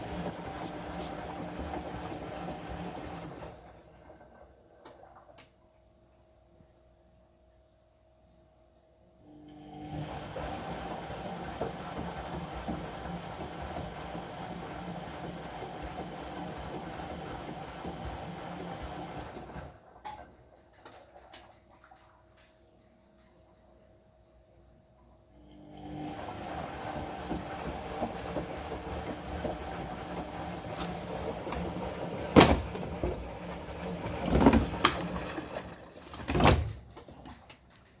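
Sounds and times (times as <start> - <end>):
washing machine rumbling: 0.0 - 5.2, 9.9 - 20.4, 25.7 - 38.0
water moving in drum: 26.4 - 37.5.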